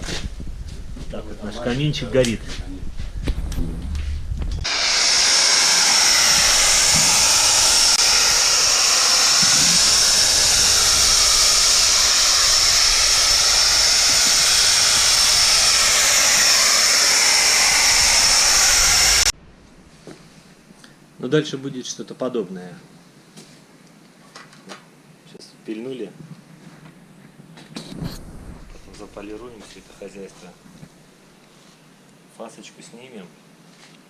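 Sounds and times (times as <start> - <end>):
electric saw cutting stone: 4.6 - 19.3.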